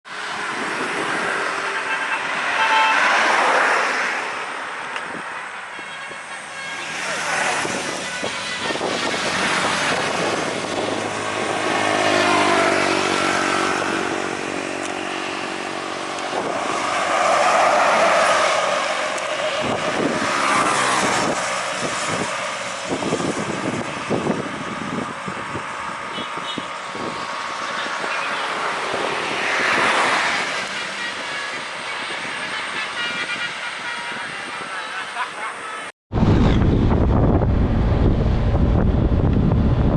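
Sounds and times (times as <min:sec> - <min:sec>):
multi-tone bus horn: 0:01.0 - 0:04.1, 0:04.9 - 0:35.9
bus engine running: 0:06.6 - 0:29.2, 0:36.2 - 0:39.9.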